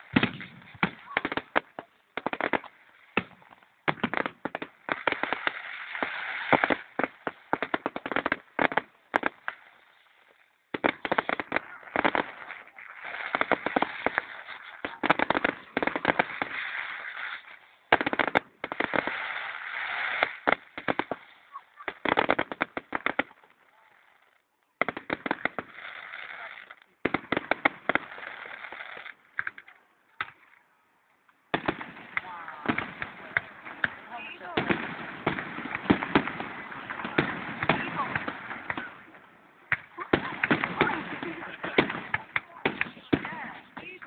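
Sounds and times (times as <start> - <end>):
fireworks bangs and crackling: 0.0 - 44.0.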